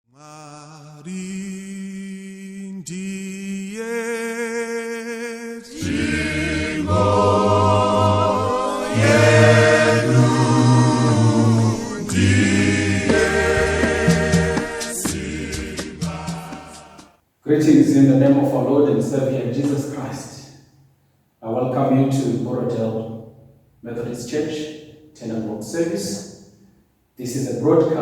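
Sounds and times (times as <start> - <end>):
choir singing held chords: 0.2 - 20.2.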